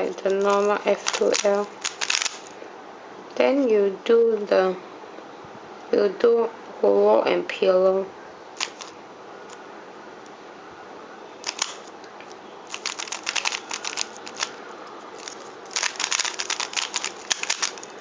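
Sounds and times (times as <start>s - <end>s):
puzzle cube layers clicking: 11.4s - 11.9s, 12.7s - 14.6s, 15.2s - 17.9s.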